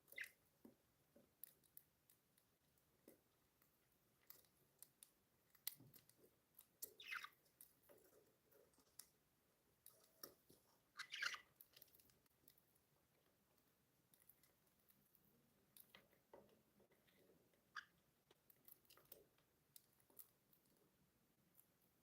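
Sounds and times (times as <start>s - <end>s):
budgerigar chirps: 7.0s - 7.4s, 11.0s - 11.5s.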